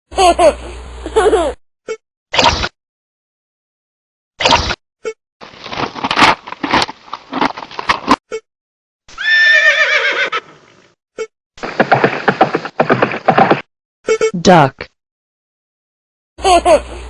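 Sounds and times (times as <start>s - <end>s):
horse whinnying: 9.1s - 10.6s.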